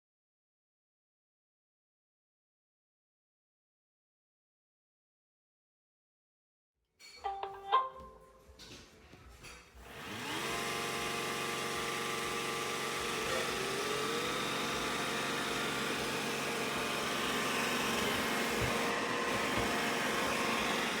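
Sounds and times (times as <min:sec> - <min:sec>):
robot vacuum motors whining: 0:09.8 - 0:21.0.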